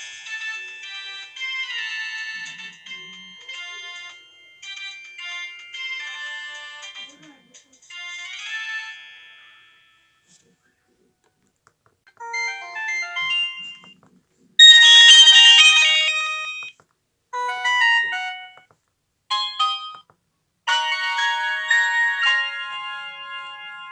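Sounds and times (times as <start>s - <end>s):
phone electronic jingles: 14.6s - 16.7s.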